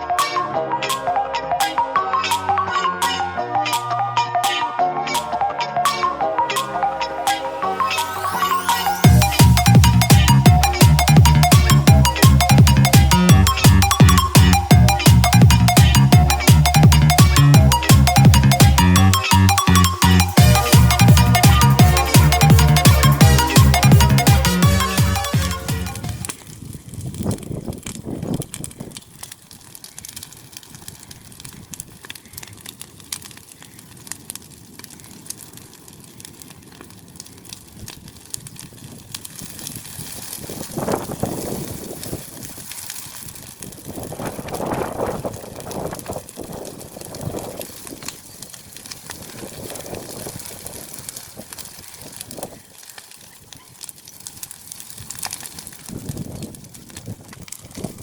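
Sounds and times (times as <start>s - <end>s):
hay crackling as it burns: 0.1s - 58.0s.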